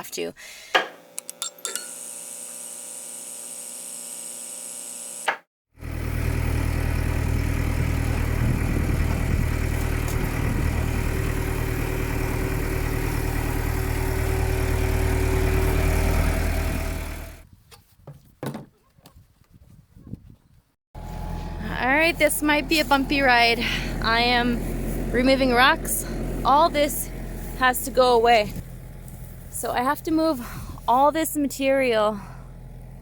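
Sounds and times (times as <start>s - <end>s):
diesel engine running: 5.8s - 17.4s, 21.0s - 33.0s.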